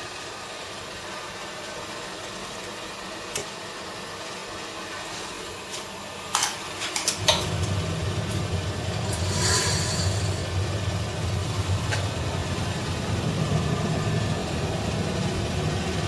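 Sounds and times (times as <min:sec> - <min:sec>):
equipment steady hiss: 0:00.0 - 0:16.0
low steady rumble: 0:07.2 - 0:16.0.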